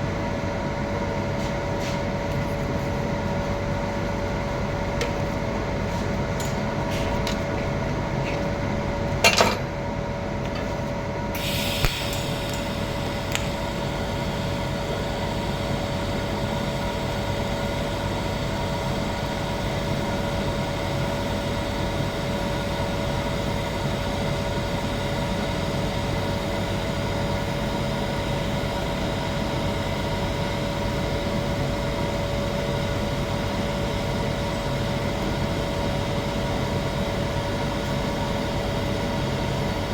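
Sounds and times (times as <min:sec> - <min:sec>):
welding setup hum: 0:00.0 - 0:39.9
welding arc hissing crackle: 0:11.4 - 0:15.3.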